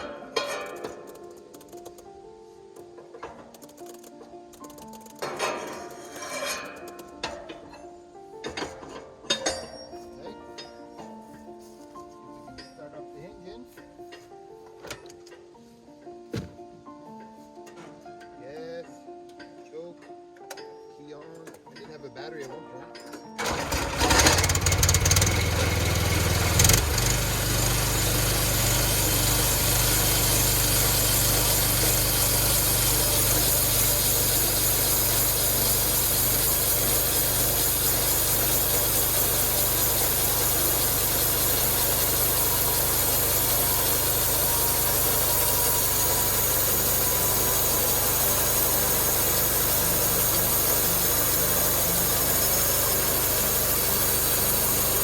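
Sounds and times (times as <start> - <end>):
sawmill engine running: 23.4 - 55.0.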